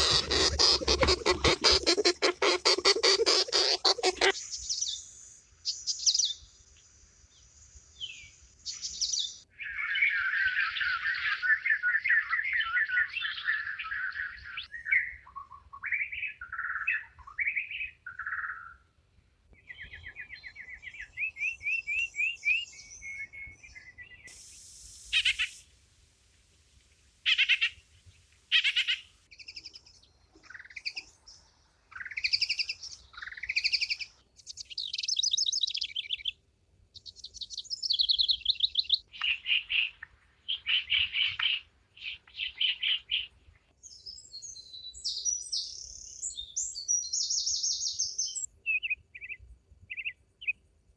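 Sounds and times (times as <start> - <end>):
long fast bird trill: 0.0 - 4.4
birds calling and singing: 0.0 - 5.0, 43.9 - 50.2.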